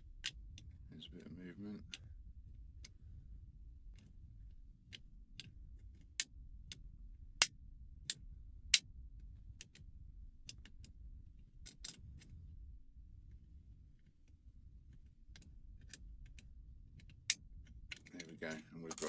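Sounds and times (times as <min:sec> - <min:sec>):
faint low hum: 0:00.0 - 0:19.0.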